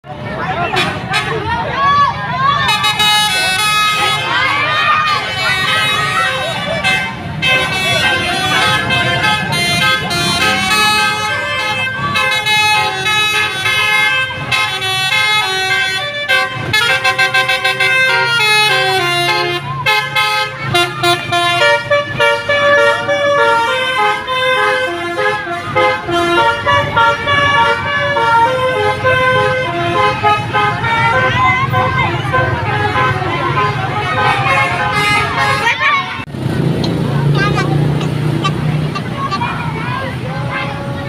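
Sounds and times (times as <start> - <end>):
musical air horn melody: 2.7 - 35.8.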